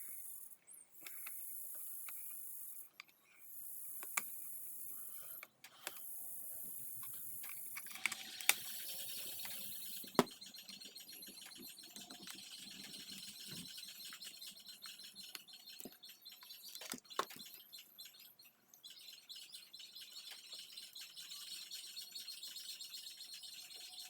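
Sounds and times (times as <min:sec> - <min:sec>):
sharp clicks and taps: 0:04.0 - 0:04.4.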